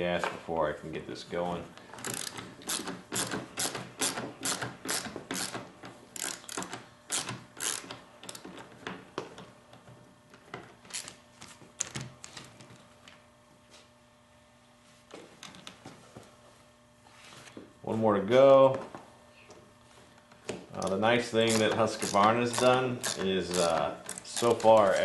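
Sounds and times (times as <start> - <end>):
ratchet tool clicking: 2.0 - 5.6, 6.2 - 8.4, 21.4 - 25.0.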